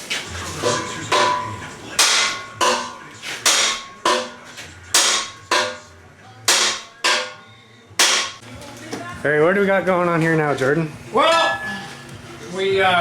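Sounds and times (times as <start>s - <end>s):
sledgehammer striking steel: 0.6s - 5.9s, 6.5s - 7.4s, 8.0s - 8.4s.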